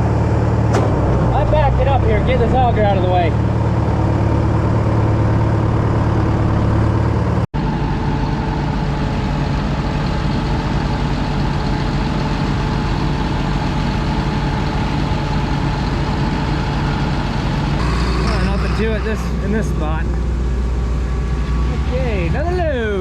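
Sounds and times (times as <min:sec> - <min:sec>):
tractor engine running: 0:00.0 - 0:23.0.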